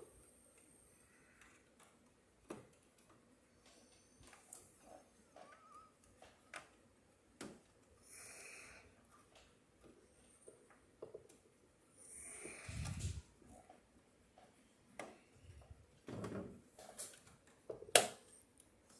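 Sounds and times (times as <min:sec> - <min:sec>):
breath-like hiss: 0:12.0 - 0:13.2
clicks and taps of computer parts: 0:16.8 - 0:18.3.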